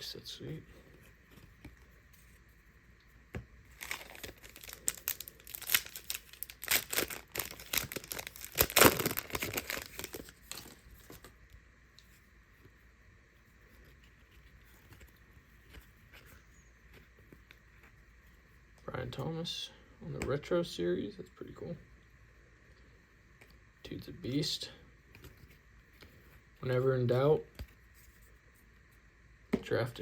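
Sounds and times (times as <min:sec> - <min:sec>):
wrapper tearing and crinkling: 0:03.7 - 0:11.3.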